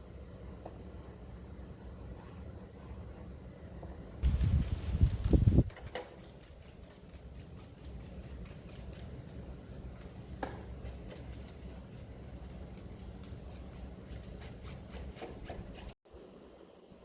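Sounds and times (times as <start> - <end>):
brush scrubbing plastic casing: 4.2 - 16.0.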